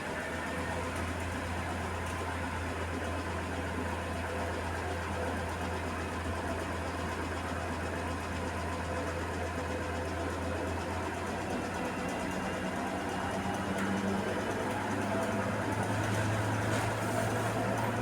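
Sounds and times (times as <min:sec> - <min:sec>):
washing machine humming: 0:15.7 - 0:18.0.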